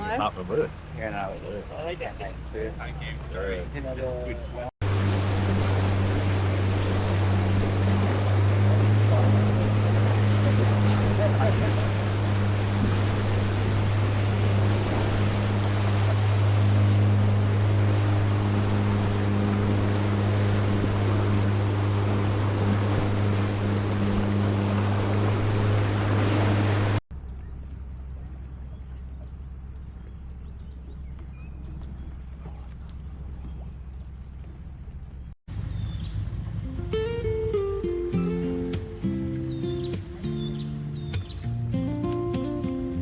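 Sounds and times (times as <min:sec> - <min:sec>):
rushing water: 0:00.0 - 0:27.0, 0:35.5 - 0:43.0
boat engine running: 0:00.0 - 0:43.0
rushing wind: 0:04.8 - 0:27.0, 0:35.5 - 0:41.8.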